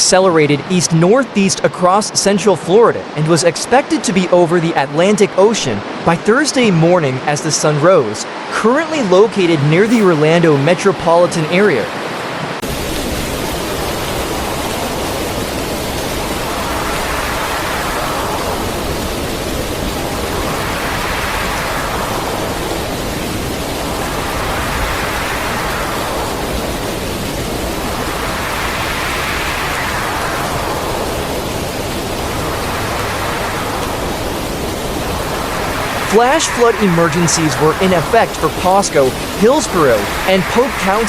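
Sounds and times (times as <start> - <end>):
storm wind: 9.5 - 41.0
heavy rain: 12.0 - 41.0.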